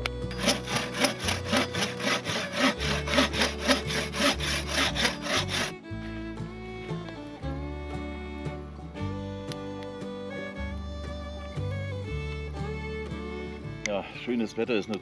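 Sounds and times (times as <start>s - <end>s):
background music: 0.0s - 15.0s
hand saw cutting wood: 0.2s - 5.8s.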